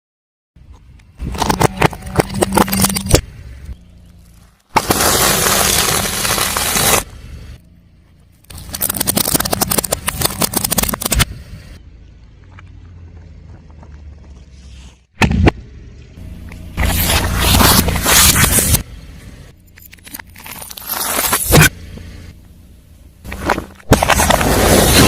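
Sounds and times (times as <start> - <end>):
tyre crushing crunchy objects: 1.2 - 3.2, 4.0 - 7.2, 16.7 - 18.9, 23.2 - 25.0
car engine running: 6.1 - 14.8, 15.4 - 24.8.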